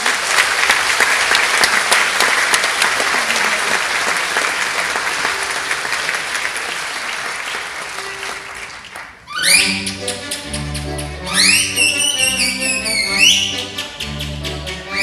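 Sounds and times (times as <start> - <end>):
audience applauding: 0.0 - 9.3.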